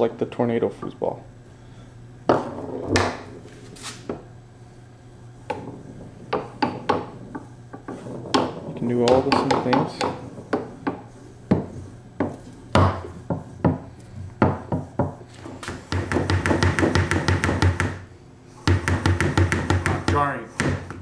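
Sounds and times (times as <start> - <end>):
foosball ball knocking on table: 2.3 - 3.4, 5.5 - 18.0.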